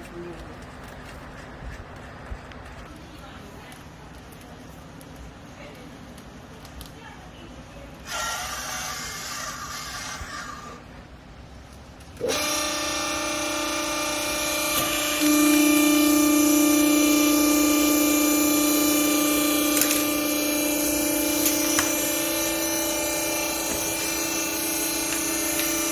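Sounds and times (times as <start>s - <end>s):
hydraulic pump motor whine: 12.2s - 25.9s.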